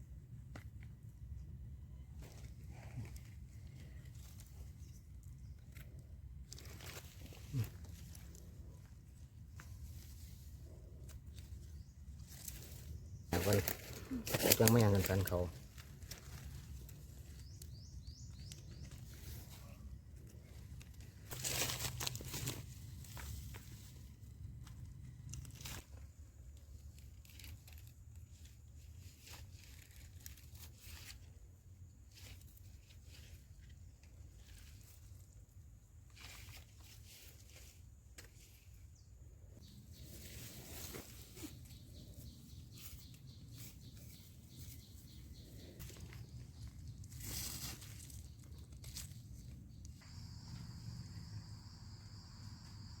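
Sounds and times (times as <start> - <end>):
rustling forest litter: 1.9 - 53.0
footsteps through dry leaves: 21.3 - 23.8, 45.8 - 49.2
insect high-pitched trill: 49.7 - 53.0.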